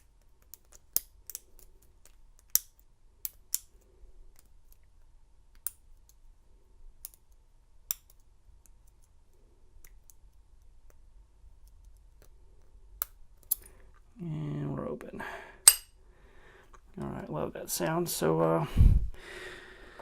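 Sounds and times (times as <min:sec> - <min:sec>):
lock pick clicking on pins: 0:00.4 - 0:03.8, 0:15.6 - 0:15.9.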